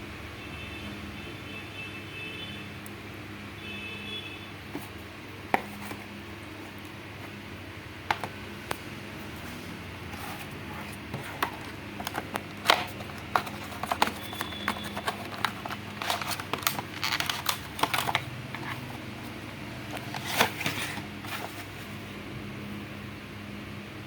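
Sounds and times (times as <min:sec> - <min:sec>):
hands handling computer hardware: 0:04.7 - 0:22.0.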